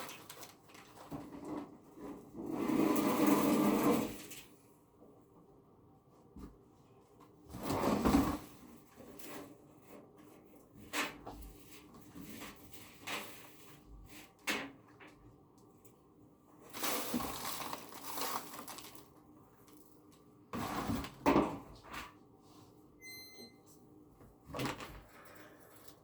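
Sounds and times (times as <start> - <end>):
scraping and rustling: 16.7 - 19.1.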